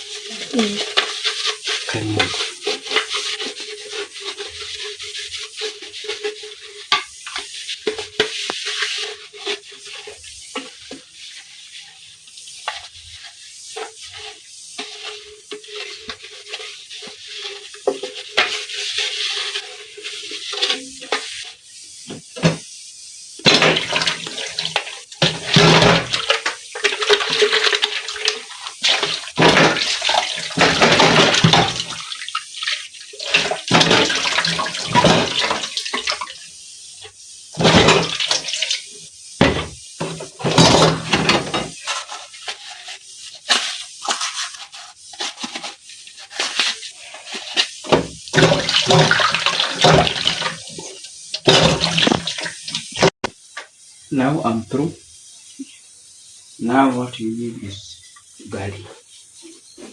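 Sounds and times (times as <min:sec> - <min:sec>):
tap water running and splashing: 0:00.0 - 0:59.9
utensils clinking: 0:51.4 - 0:53.1.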